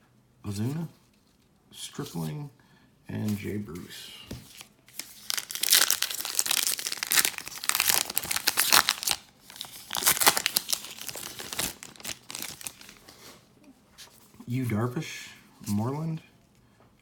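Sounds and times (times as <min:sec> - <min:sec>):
foil wrapper crinkling: 0:04.5 - 0:13.4.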